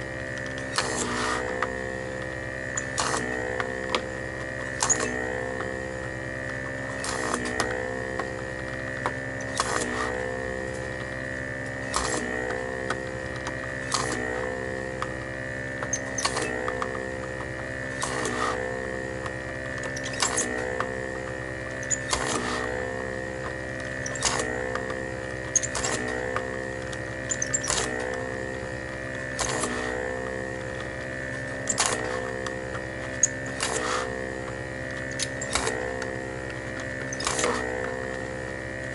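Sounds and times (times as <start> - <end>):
vacuum pump whining: 0.0 - 38.9
sharp click: 31.6 - 32.2.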